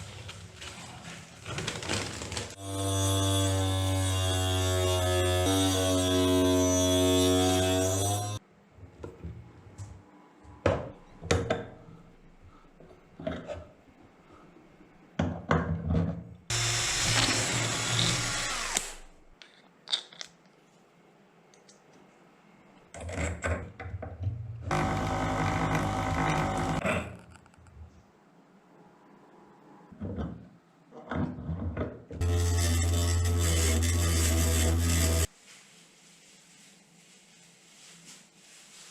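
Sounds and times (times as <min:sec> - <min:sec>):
table saw motor running: 0:24.7 - 0:26.8.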